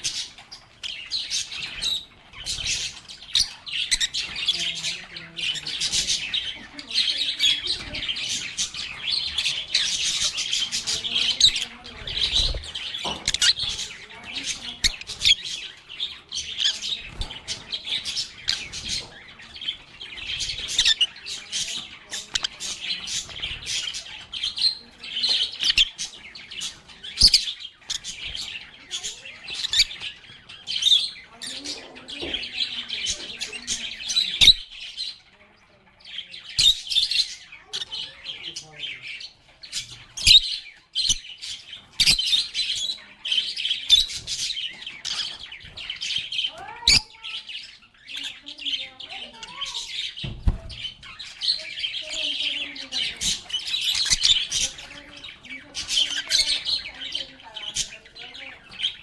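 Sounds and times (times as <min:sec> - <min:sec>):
lovebirds chirping and squawking: 0:00.0 - 0:59.0.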